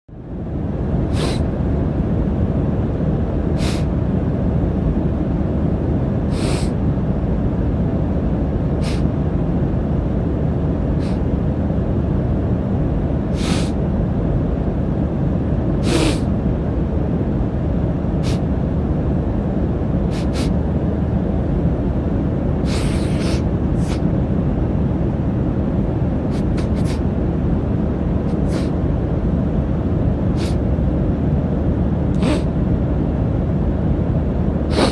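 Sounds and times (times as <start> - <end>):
airliner cabin drone: 0.1 - 34.9
man sniffling: 22.7 - 24.0.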